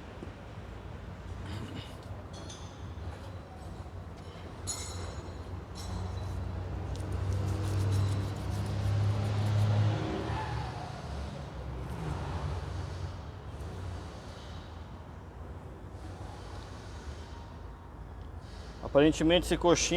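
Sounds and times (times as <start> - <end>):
light metallic clinks: 4.2 - 6.4.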